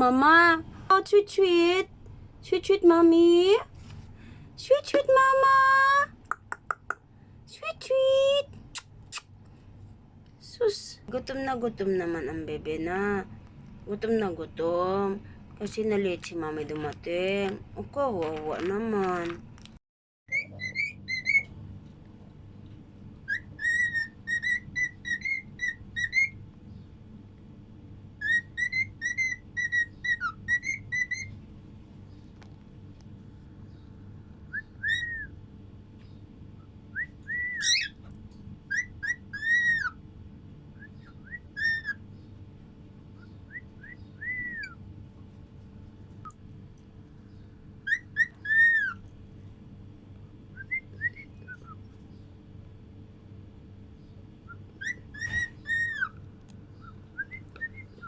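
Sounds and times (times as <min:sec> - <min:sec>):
cockatiel whistling and chirping: 0:20.3 - 0:21.5, 0:23.3 - 0:26.4, 0:28.2 - 0:31.3, 0:34.5 - 0:35.3, 0:36.9 - 0:38.0, 0:38.7 - 0:40.0, 0:40.8 - 0:42.0, 0:43.2 - 0:44.8, 0:47.8 - 0:49.0, 0:54.5 - 0:56.2.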